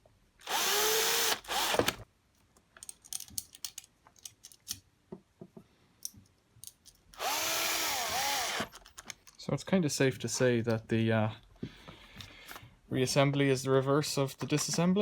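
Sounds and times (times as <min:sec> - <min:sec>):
cordless drill motor whirring: 0:00.4 - 0:02.0, 0:07.2 - 0:08.7
plastic parts clicking and knocking: 0:02.6 - 0:07.1, 0:08.6 - 0:09.4, 0:14.4 - 0:15.0.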